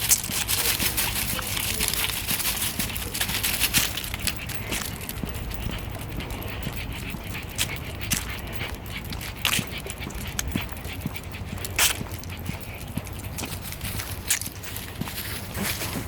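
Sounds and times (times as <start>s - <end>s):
dog crunching dry leaves: 0.0s - 5.6s, 11.6s - 16.0s.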